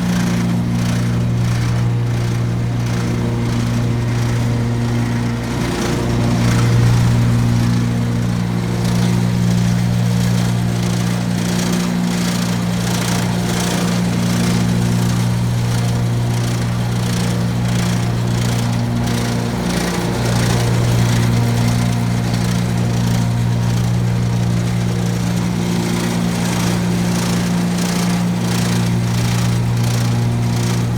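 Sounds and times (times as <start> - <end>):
fast rattle from mower deck: 0.0 - 30.9
lawn mower engine hum: 0.0 - 30.9.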